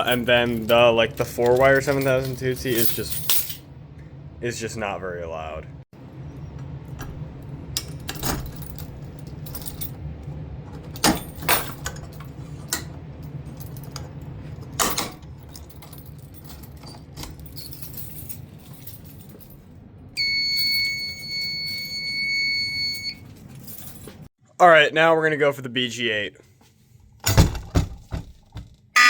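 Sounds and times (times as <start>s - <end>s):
high-pitched electronic alarm tone: 20.2s - 23.2s.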